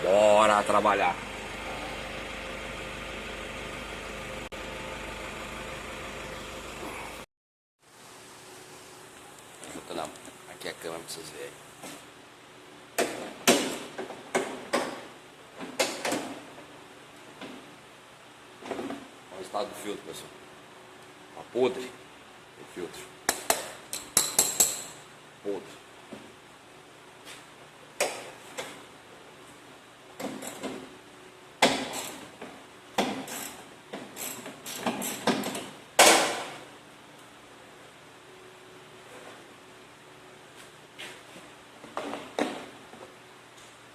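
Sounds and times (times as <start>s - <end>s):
knocks and clunks of tools: 33.9s - 36.5s.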